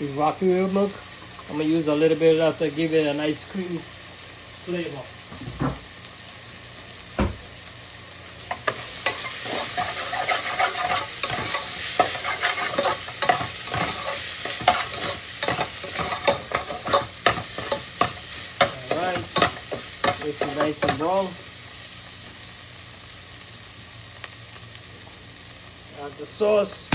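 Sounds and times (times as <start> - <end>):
meat sizzling in frying pan: 0.0 - 26.9
utensil scraping pan: 8.5 - 21.0.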